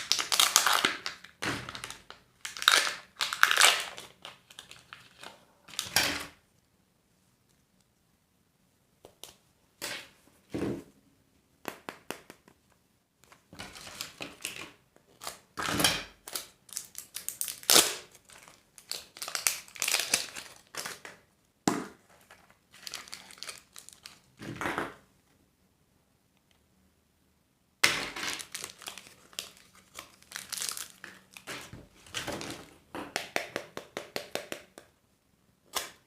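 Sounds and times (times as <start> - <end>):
candy wrapper crinkling: 0.0 - 6.3, 13.6 - 21.2, 22.2 - 24.4, 28.1 - 33.5.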